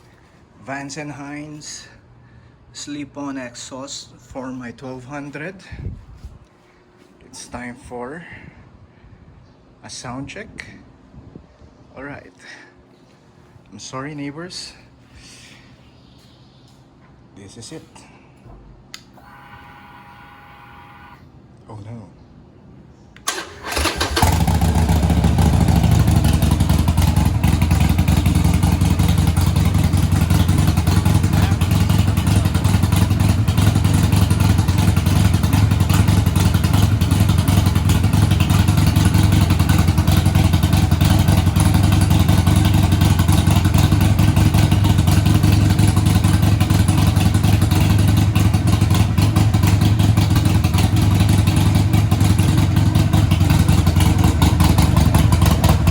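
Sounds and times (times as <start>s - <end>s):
motorcycle engine starting and running: 23.2s - 55.9s.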